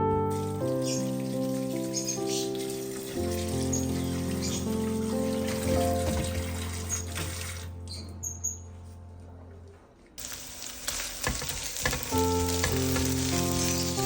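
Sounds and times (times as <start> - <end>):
background music: 0.0 - 14.0
food sizzling in a frying pan: 0.3 - 6.1, 10.2 - 14.0.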